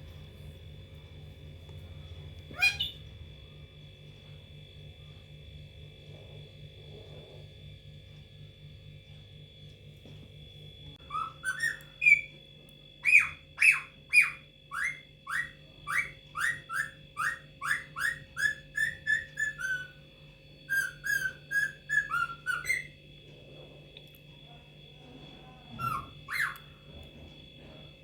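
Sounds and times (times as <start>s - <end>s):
parakeet calling: 2.5s - 3.1s, 11.0s - 12.3s, 13.0s - 20.0s, 20.7s - 23.0s, 25.8s - 26.8s.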